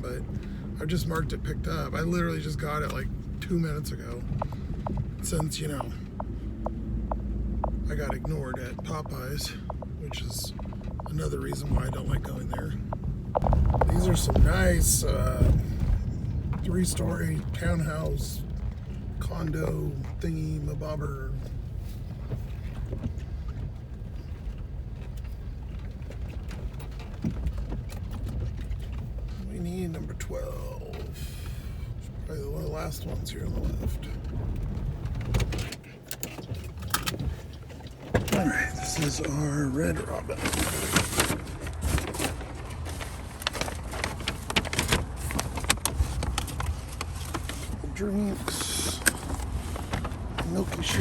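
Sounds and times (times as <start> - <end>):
car interior rumble: 0.0 - 51.0
light clicks and knocks: 4.2 - 17.6, 21.4 - 30.2.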